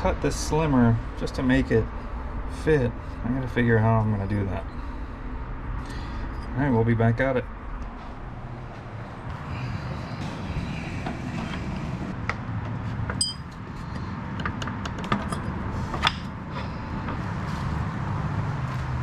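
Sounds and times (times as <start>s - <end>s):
low rumble: 7.4s - 12.2s
metallic clink: 13.2s - 13.6s.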